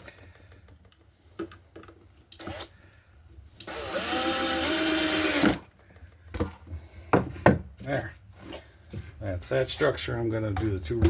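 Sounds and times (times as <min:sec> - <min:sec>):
power drill driving a screw: 0:02.4 - 0:02.7, 0:03.6 - 0:05.7.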